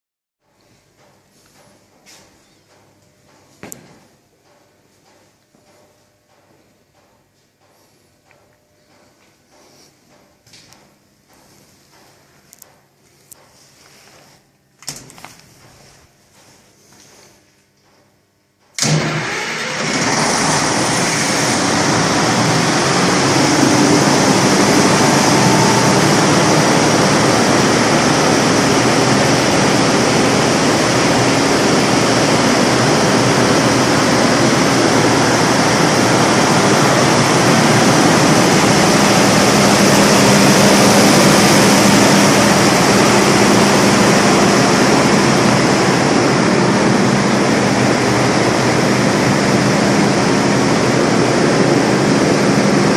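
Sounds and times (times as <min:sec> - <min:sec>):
diesel generator running: 0:18.8 - 0:52.9.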